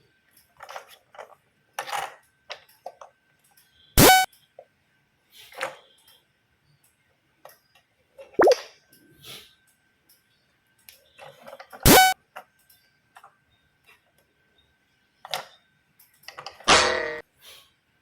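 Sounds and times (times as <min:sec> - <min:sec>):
buzzy toy horn: 0:04.0 - 0:04.3, 0:11.9 - 0:12.2.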